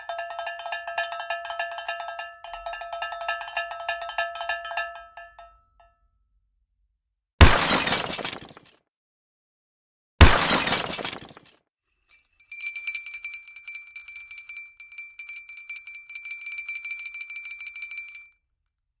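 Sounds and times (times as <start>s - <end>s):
loud crash: 10.2s - 11.4s
small bells jingling: 12.1s - 18.4s.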